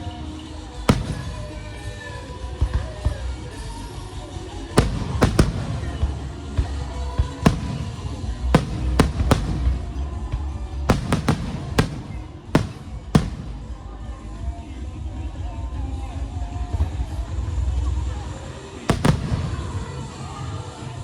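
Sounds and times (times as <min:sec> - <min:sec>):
fireworks bangs: 0:00.9 - 0:02.0, 0:04.8 - 0:14.3, 0:18.9 - 0:20.8.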